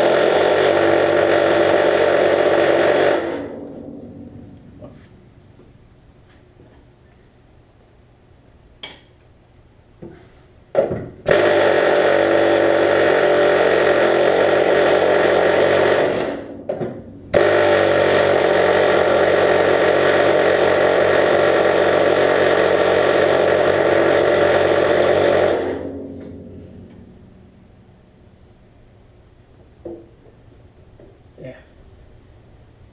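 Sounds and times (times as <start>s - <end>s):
pneumatic air chisel hammering: 0.0s - 3.6s, 10.8s - 26.4s.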